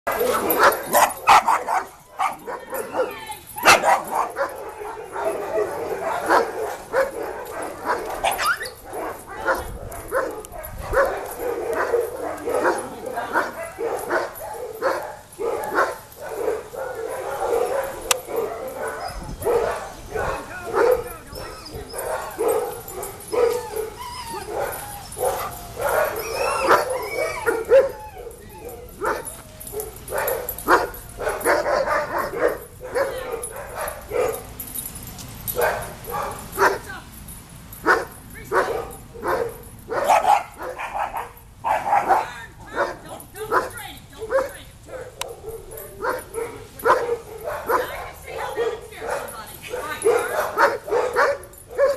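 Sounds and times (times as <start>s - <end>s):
dog barking rapidly: 0.1s - 12.8s, 37.9s - 43.7s
small dog barking and yelping: 0.1s - 34.4s, 37.9s - 43.0s.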